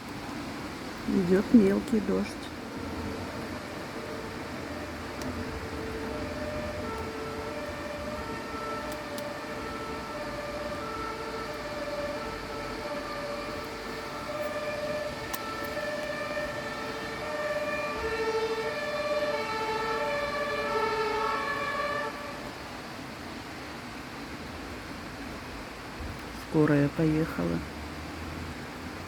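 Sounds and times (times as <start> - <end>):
light rain hissing: 0.0 - 29.0
ambulance siren: 1.1 - 22.6.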